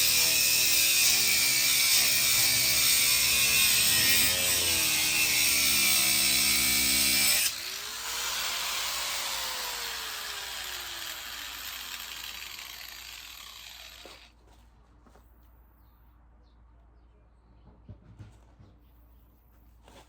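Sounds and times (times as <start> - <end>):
power tool running loudly: 0.0 - 14.3.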